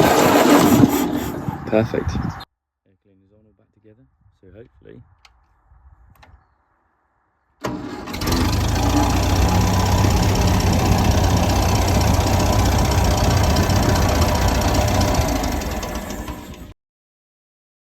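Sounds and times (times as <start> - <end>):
tractor engine running: 7.6 - 16.7
starter motor engaging: 7.6 - 16.8.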